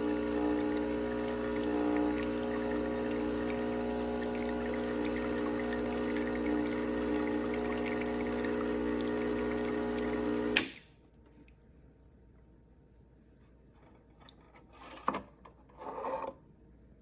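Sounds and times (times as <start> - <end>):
espresso machine pump buzzing: 0.0 - 10.7.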